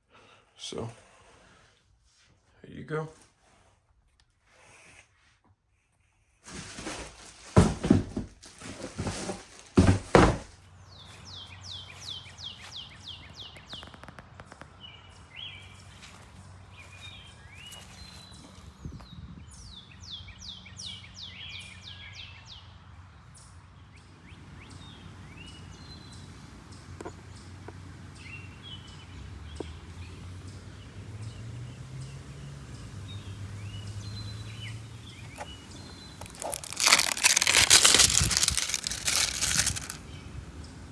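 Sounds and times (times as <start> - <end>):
loud thumps and knocks: 7.6 - 8.4
birds singing: 14.8 - 22.8, 32.8 - 40.9.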